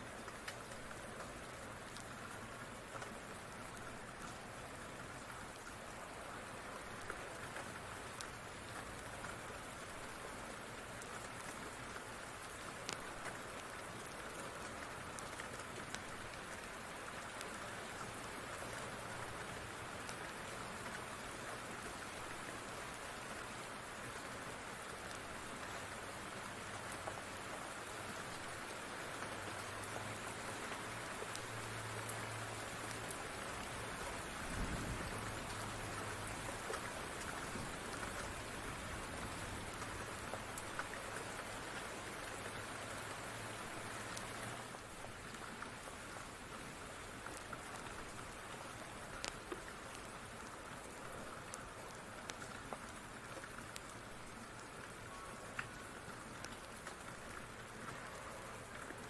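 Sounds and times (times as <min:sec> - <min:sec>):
steady rain falling: 0:00.0 - 0:59.0
wood fire crackling: 0:12.8 - 0:13.7, 0:53.7 - 0:54.3.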